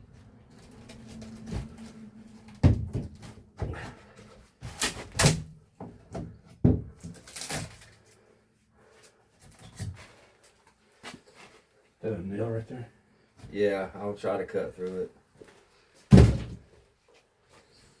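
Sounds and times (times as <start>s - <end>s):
wood knocking and banging: 2.4s - 4.0s, 5.1s - 7.2s.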